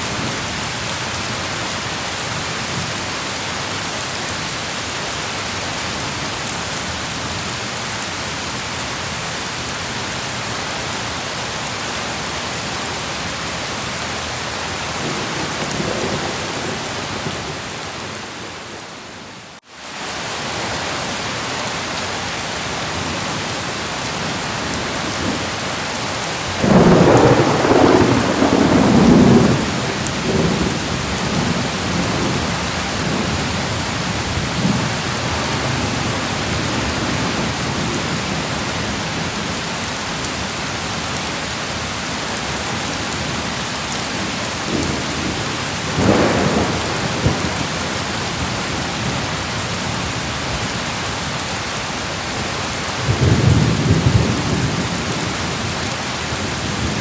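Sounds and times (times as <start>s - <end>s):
heavy rain falling: 0.0s - 57.0s
rolling thunder: 26.6s - 33.6s, 44.6s - 49.3s.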